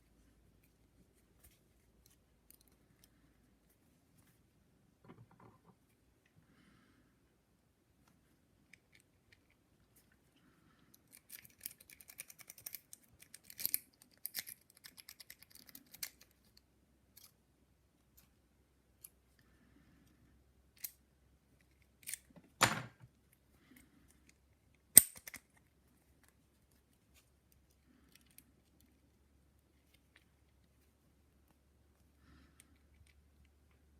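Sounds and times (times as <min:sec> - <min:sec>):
padlock rattle: 0:11.1 - 0:16.3, 0:24.9 - 0:25.6
lock pick clicking in padlock: 0:25.0 - 0:25.5.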